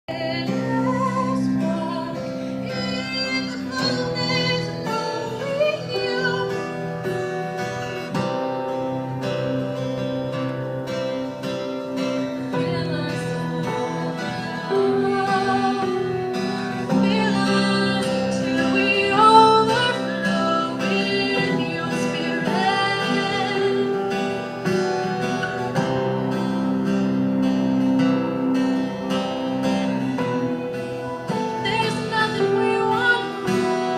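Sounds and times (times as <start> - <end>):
person singing: 0.0 - 6.9, 12.4 - 24.5, 31.4 - 33.9
plucked strings: 0.1 - 33.9.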